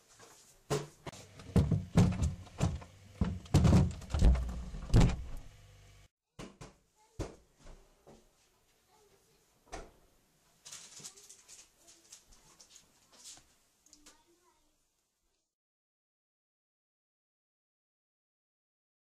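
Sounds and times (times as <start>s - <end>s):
rapid knocks and thuds: 0.7s - 5.4s.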